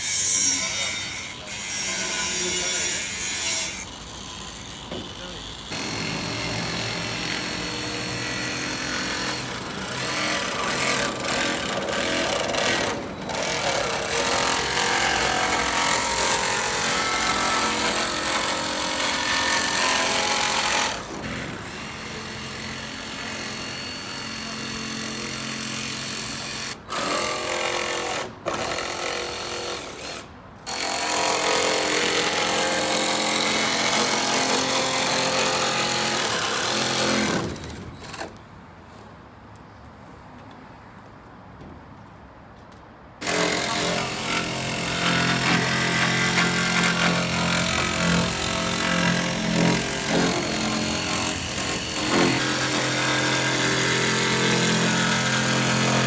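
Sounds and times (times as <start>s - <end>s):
power tool rattling: 5.7s - 21.7s, 43.2s - 56.0s.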